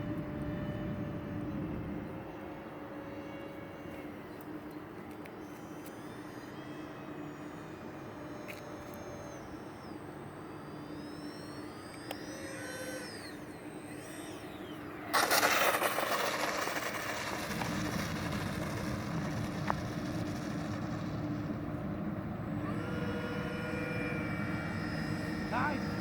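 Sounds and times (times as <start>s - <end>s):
electric ducted fans whining: 0.0s - 26.0s
rough rolling noise: 15.1s - 21.8s.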